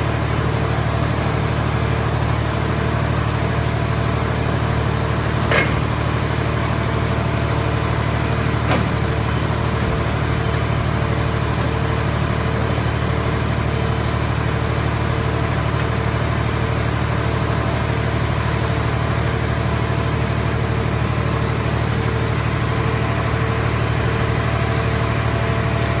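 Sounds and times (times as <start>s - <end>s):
engine idling drone: 0.0s - 26.0s.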